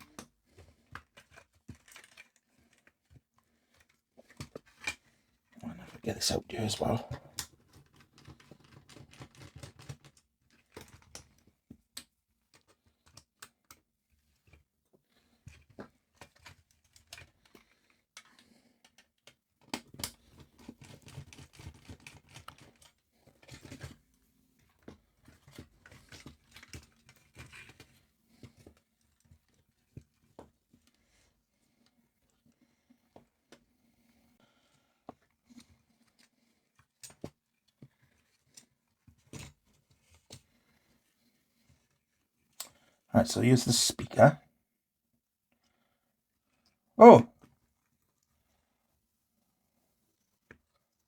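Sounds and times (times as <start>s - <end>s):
clicks and rustles of plastic parts: 0.0s - 6.0s, 7.2s - 14.7s, 15.3s - 33.7s, 35.0s - 42.8s.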